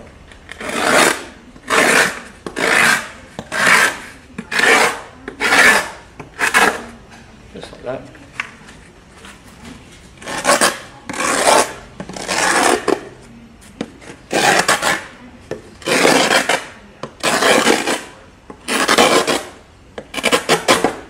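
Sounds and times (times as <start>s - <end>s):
chisel scraping plywood: 0.5s - 6.9s, 10.2s - 13.1s, 14.0s - 15.1s, 15.8s - 21.0s.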